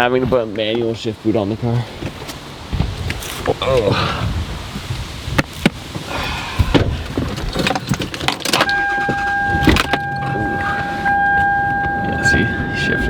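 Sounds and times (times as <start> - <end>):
clicks and knocks of handling: 6.7 - 10.9
high electronic warning tone: 8.6 - 13.0.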